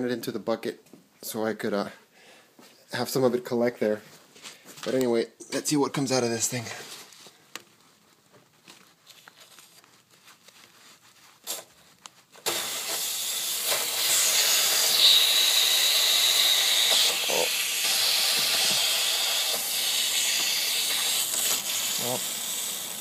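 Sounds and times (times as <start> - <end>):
valve click: 12.4 - 23.0
water rushing with loud hiss: 12.5 - 23.0.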